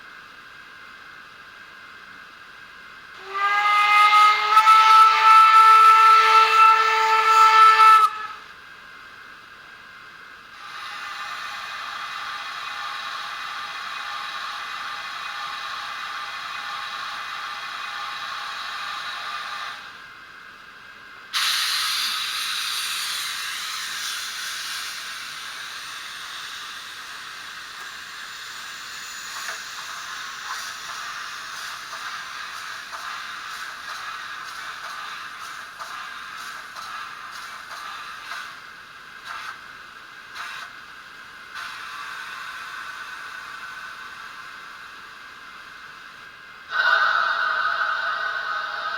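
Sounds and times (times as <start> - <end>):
steady steam hiss: 0.0 - 3.8, 4.6 - 48.9
chord steam whistle: 3.2 - 8.5, 46.7 - 48.9
loud steam hiss: 10.6 - 20.0, 21.3 - 48.9.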